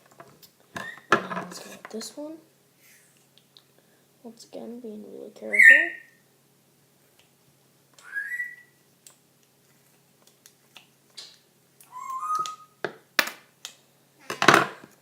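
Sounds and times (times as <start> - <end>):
whistle-like chirps: 8.0 - 8.8, 11.9 - 12.8.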